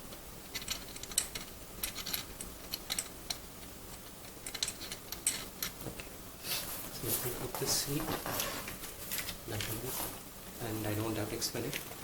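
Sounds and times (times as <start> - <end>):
small metal parts clicking: 0.4 - 3.4, 4.2 - 5.8.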